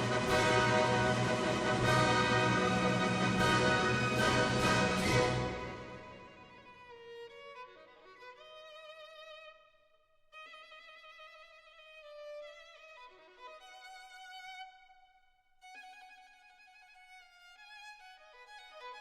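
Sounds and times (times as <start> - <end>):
violin slow held notes: 0.0 - 6.7.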